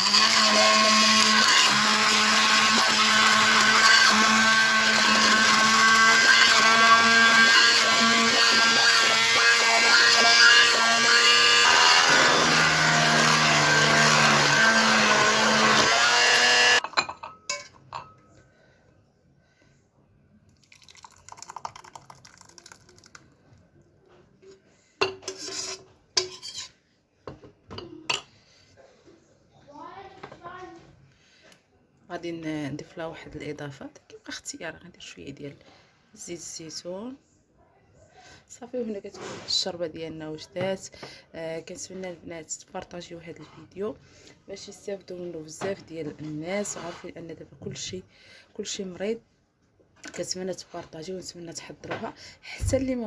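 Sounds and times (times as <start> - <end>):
electric blender running: 0.0 - 16.8.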